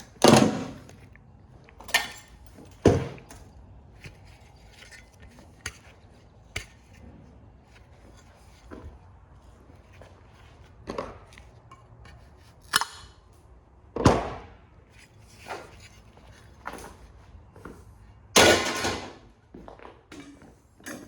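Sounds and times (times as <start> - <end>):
metal screws and parts handled: 0.8 - 7.0
hand tools clinking: 1.7 - 6.0.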